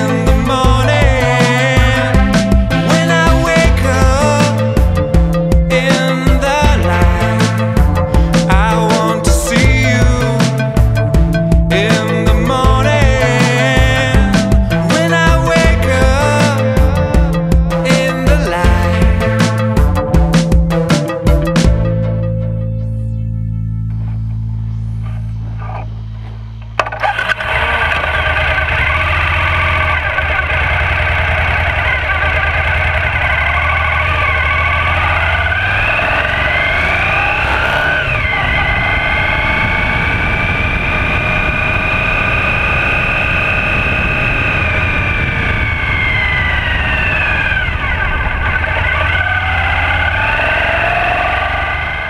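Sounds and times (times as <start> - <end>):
drone motors whining: 12.5 - 52.0
low steady rumble: 18.8 - 52.0.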